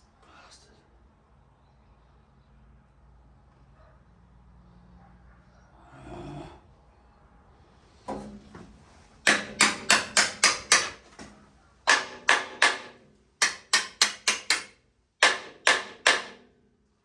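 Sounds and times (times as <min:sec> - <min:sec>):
hammer striking metal: 0:09.2 - 0:16.6.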